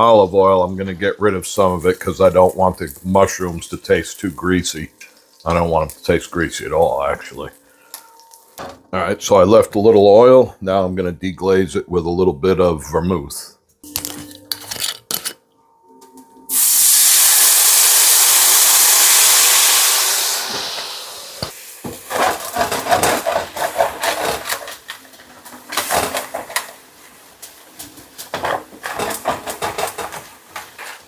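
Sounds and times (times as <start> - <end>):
liquid sizzling in hot pan: 0.8 - 8.6, 16.5 - 23.8
utensil scraping pan: 22.0 - 24.9, 28.3 - 31.0.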